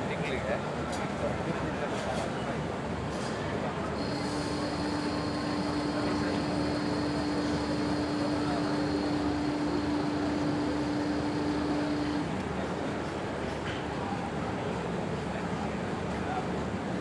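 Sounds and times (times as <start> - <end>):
constant hum: 4.0 - 12.4.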